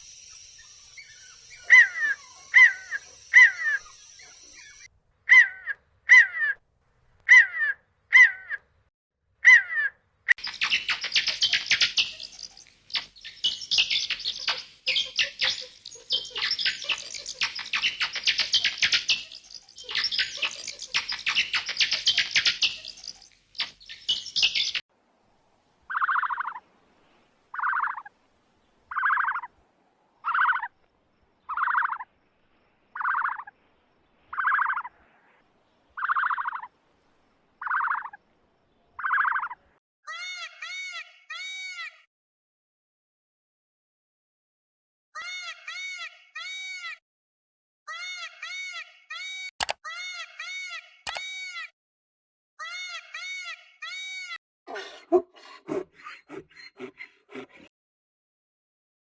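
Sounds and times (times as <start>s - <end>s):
dense bird chirping: 0.0s - 4.9s, 10.4s - 24.8s, 54.7s - 57.7s
repeated animal call: 54.7s - 57.7s
short animal calls: 54.7s - 57.7s.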